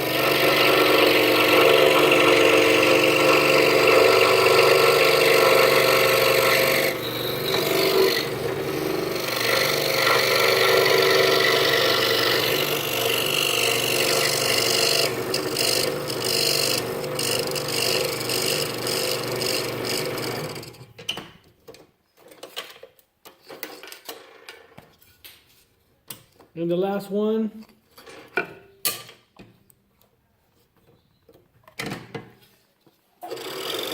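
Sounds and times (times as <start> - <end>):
scroll saw cutting wood: 0.0 - 20.8, 33.2 - 33.9.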